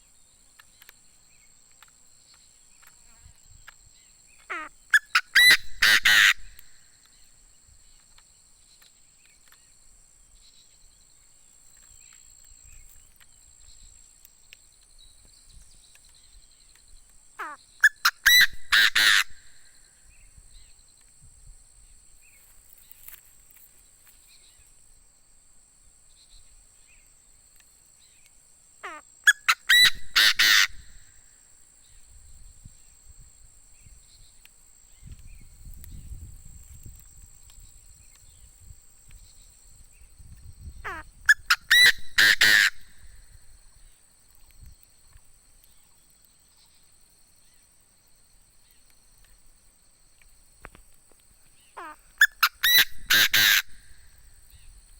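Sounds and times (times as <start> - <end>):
francolin harsh calls: 4.4 - 7.0, 17.4 - 20.7, 28.8 - 32.1, 40.6 - 43.9, 51.6 - 54.7.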